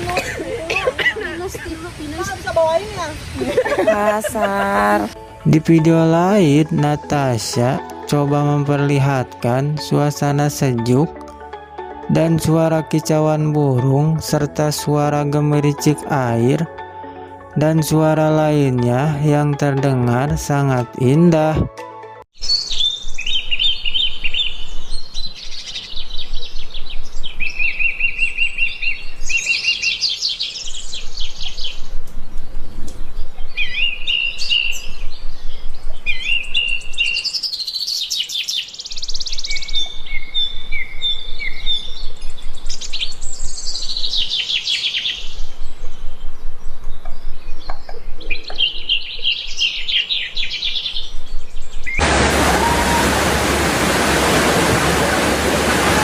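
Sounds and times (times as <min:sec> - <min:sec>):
songbirds trilling and chirping: 0:22.4 - 0:52.3.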